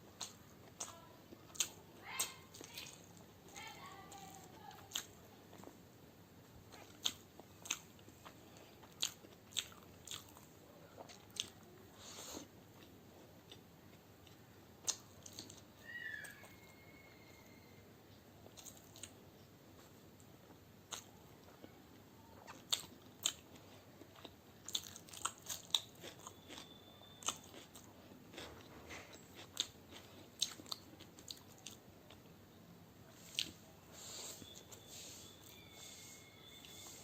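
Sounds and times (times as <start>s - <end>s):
chewing with crunches: 0.1s - 5.8s, 6.7s - 16.8s, 18.4s - 32.3s, 33.1s - 37.0s
faint high chirp: 15.8s - 18.2s, 26.1s - 27.7s, 33.9s - 37.0s.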